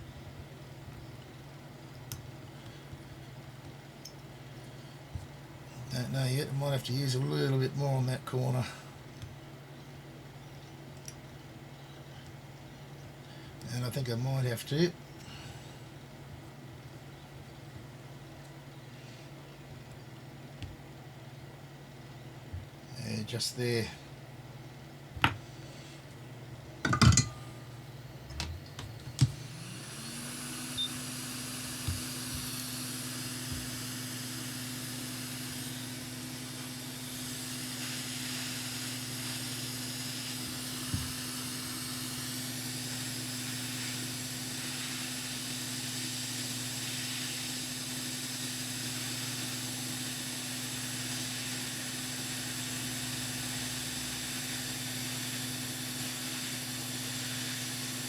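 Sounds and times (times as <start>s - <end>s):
handling clicks and knocks: 26.8s - 27.3s
small electric tool motor humming: 29.2s - 58.0s.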